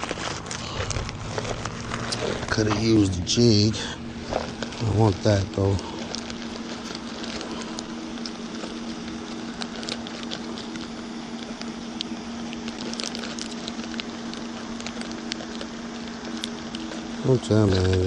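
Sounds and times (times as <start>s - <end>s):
steady hum and hiss: 0.0s - 18.0s.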